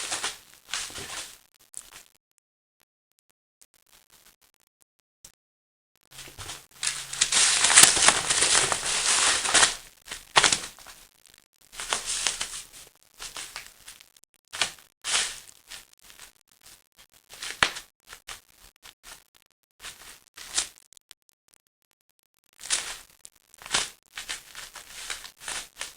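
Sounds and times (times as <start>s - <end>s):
bubble wrap crinkling: 0.0s - 2.0s, 6.1s - 11.1s, 11.7s - 16.3s, 17.3s - 18.4s, 19.8s - 20.8s, 22.6s - 25.9s.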